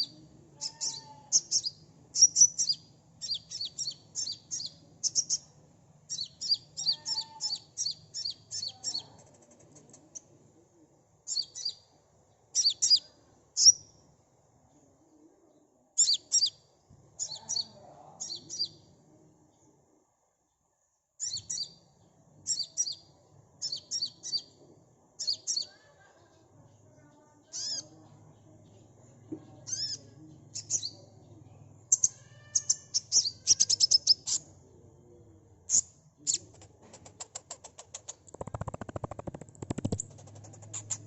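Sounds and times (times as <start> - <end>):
bird chirping rapidly: 0.7 - 5.5, 6.1 - 9.1, 31.9 - 34.4, 37.1 - 41.0.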